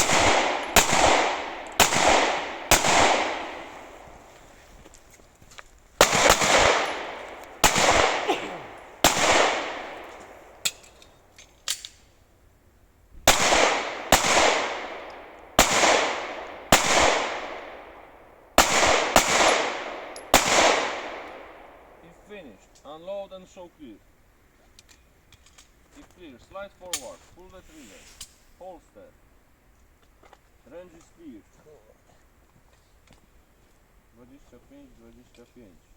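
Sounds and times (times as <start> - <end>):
pistol shots echoing: 0.0 - 4.2, 6.0 - 10.8, 13.3 - 22.1.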